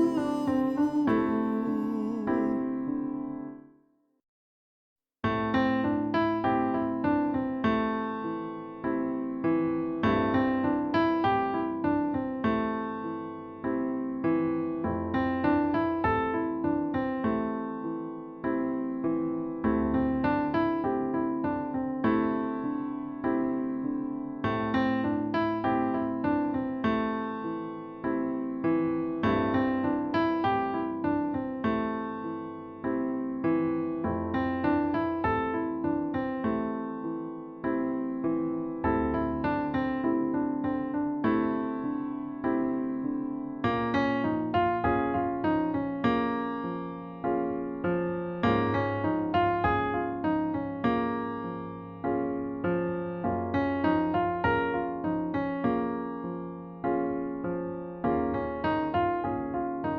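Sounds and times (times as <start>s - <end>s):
keyboard playing a riff: 0.0s - 2.6s
piano chords and notes: 0.0s - 3.8s, 5.2s - 59.9s.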